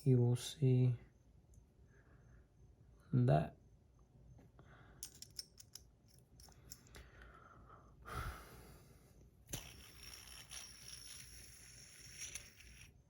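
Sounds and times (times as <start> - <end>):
soft breath: 6.7 - 9.3
fidget spinner clicking: 9.5 - 12.9.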